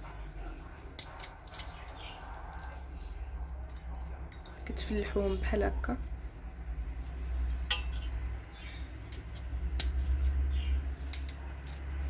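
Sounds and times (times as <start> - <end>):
metal kitchenware clinks: 7.5 - 9.2.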